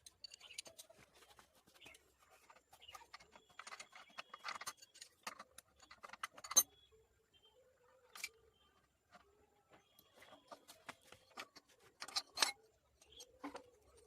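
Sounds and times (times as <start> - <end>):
metal parts and tools clinking: 0.0 - 6.9, 8.0 - 8.4, 10.1 - 14.0.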